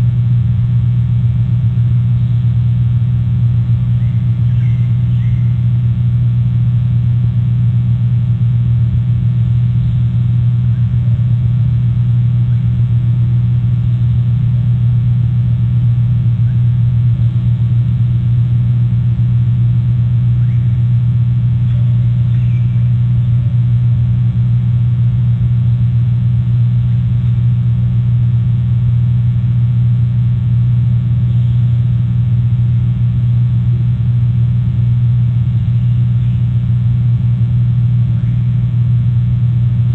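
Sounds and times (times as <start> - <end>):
low electrical hum: 0.0 - 39.9.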